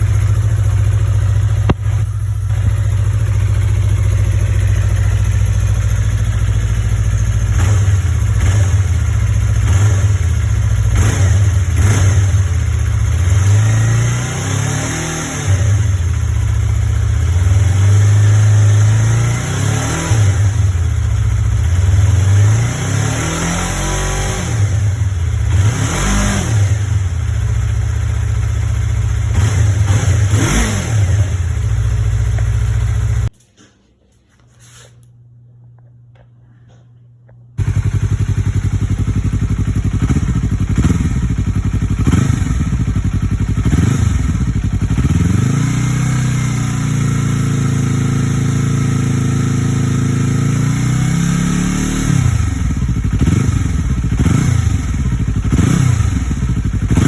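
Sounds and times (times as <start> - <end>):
motorcycle engine idling and revving: 0.0 - 33.3, 37.6 - 57.0.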